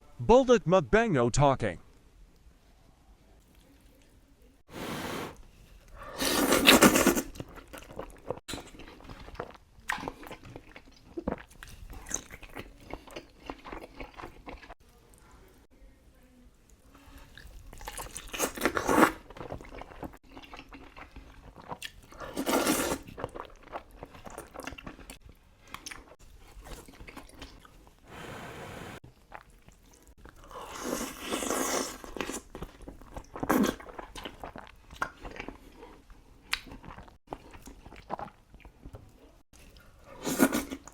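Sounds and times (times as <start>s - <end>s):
person chewing noodles: 5.9s - 14.8s, 17.1s - 27.9s, 29.2s - 40.9s.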